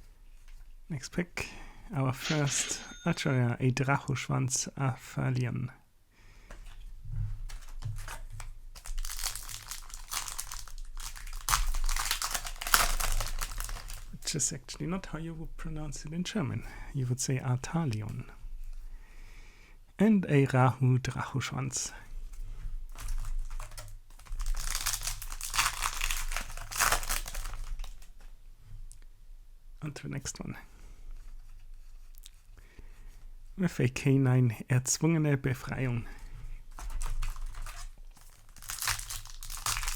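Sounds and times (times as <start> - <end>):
foil wrapper crinkling: 7.4 - 14.3, 22.9 - 28.2, 36.7 - 39.9.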